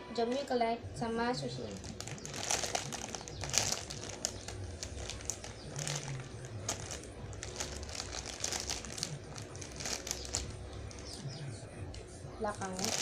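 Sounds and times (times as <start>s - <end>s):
plastic crinkling and rustling: 1.6s - 11.3s, 11.9s - 13.0s.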